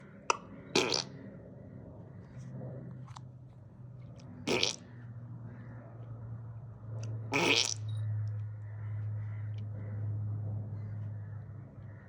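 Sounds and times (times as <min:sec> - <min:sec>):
fart sounds: 0:00.8 - 0:01.1, 0:04.5 - 0:04.8, 0:07.3 - 0:07.8.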